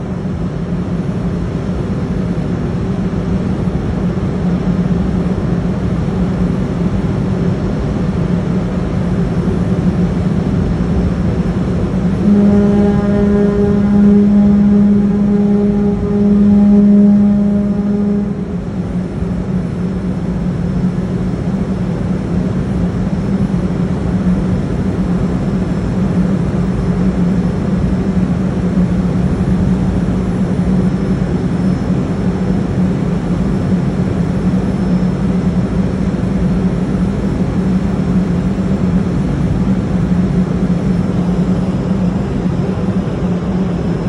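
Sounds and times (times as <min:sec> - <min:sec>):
ship engine drone: 0:00.0 - 0:44.0.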